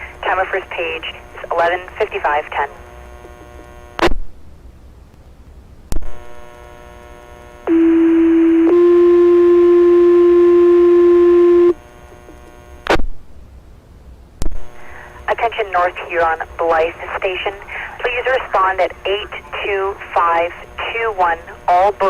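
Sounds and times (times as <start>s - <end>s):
two-tone radio page: 0.0s - 2.8s, 14.9s - 22.0s
sharp radio clicks: 18.2s - 18.6s.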